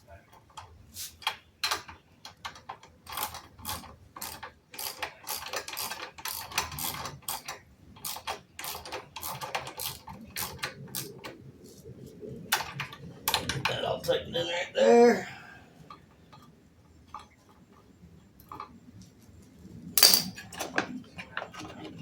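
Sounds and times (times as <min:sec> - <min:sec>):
ratchet wrench clicking: 0:04.2 - 0:10.0, 0:20.0 - 0:20.3.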